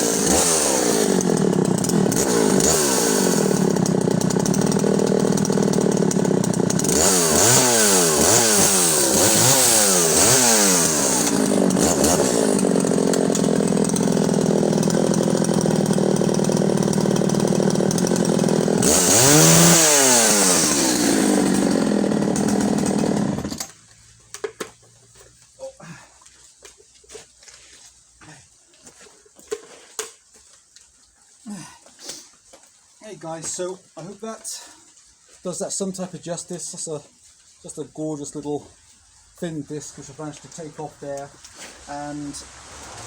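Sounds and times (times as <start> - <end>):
chainsaw cutting log: 0.0 - 23.8, 39.6 - 43.0.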